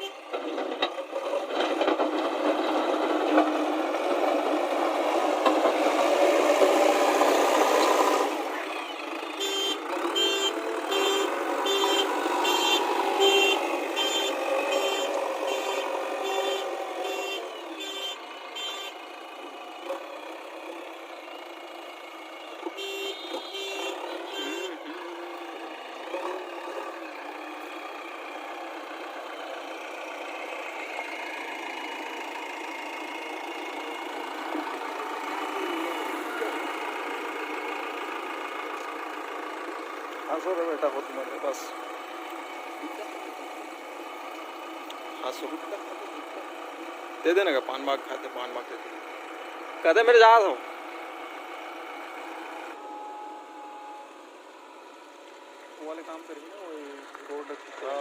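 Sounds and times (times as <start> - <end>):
backhoe engine running under load: 0.0 - 58.0
reversing alarm beeping: 52.8 - 54.2.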